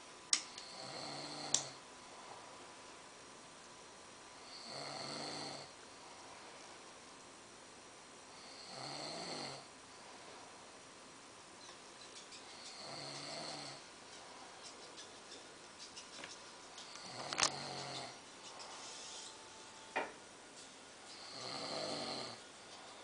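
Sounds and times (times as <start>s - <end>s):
person snoring: 0.6s - 1.8s, 4.4s - 5.8s, 8.3s - 9.7s, 12.6s - 13.9s, 17.0s - 18.2s, 21.1s - 23.0s.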